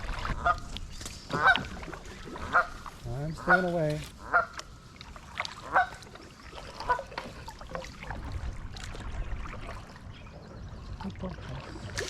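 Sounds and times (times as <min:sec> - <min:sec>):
canoe paddle splashing: 0:00.0 - 0:12.0
geese honking: 0:02.4 - 0:04.6, 0:05.6 - 0:05.9.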